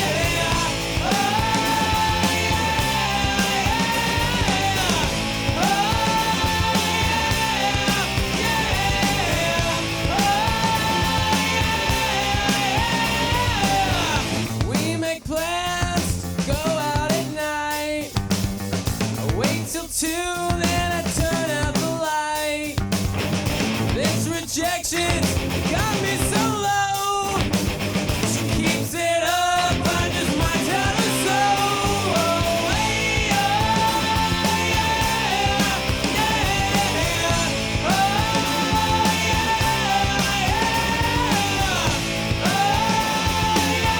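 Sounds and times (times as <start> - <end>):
rock music with singing: 0.0 - 43.9.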